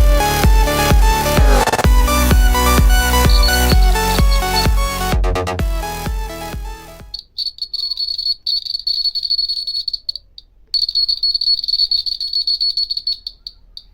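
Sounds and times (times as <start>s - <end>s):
background music: 0.0s - 7.1s
electronic alarm buzzer beeping: 3.3s - 4.8s, 10.8s - 13.4s.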